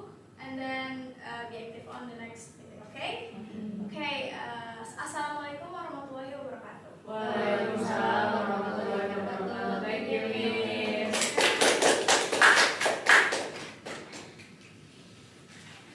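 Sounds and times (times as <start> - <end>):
voices chanting together: 7.1 - 11.9
hand clapping: 11.0 - 14.8.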